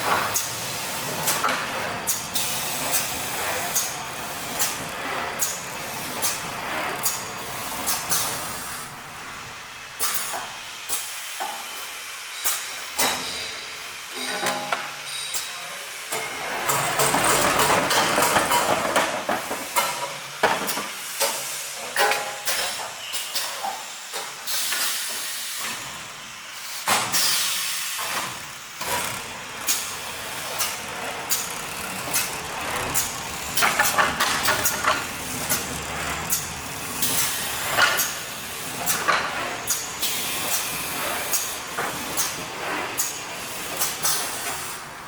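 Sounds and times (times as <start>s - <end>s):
pneumatic air hiss: 0.0s - 9.0s, 9.8s - 14.0s, 19.6s - 35.7s, 36.3s - 44.8s
steady machine hum: 0.0s - 9.9s, 28.4s - 43.7s
sharp mechanical clicks and knocks: 28.0s - 42.4s.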